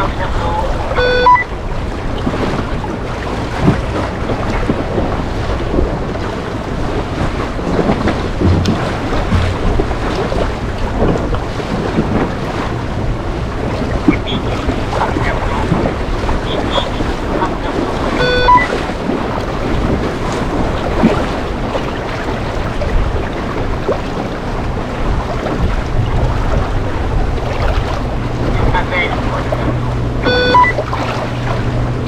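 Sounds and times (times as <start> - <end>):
water splashing along hull: 0.0 - 32.0
wind buffeting microphone: 0.0 - 32.0
short pitched beep: 1.0 - 1.5, 18.2 - 18.7, 30.2 - 30.8.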